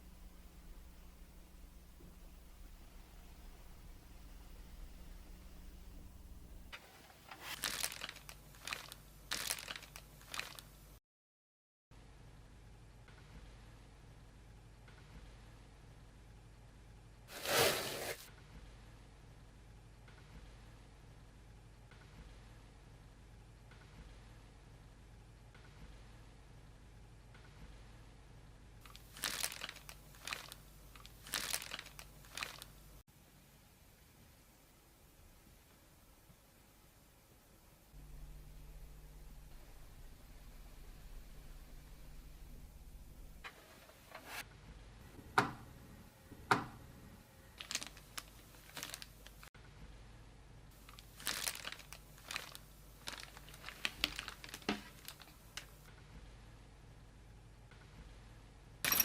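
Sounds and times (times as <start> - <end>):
packaging crinkling: 6.7 - 10.8, 17.3 - 18.2, 28.9 - 32.8, 47.6 - 49.5, 50.8 - 55.8.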